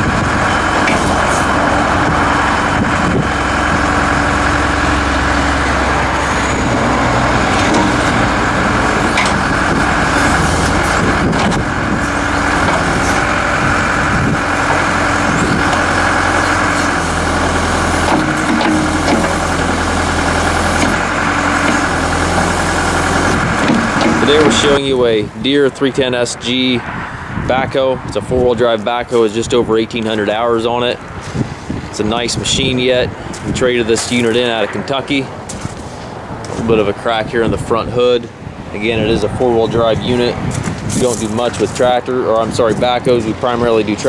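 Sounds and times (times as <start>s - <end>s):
diesel engine running: 0.0s - 44.0s.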